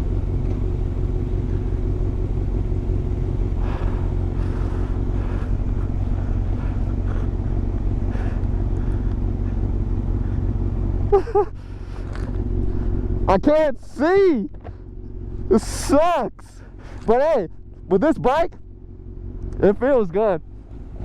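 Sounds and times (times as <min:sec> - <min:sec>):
motorcycle engine running: 0:00.0 - 0:21.0.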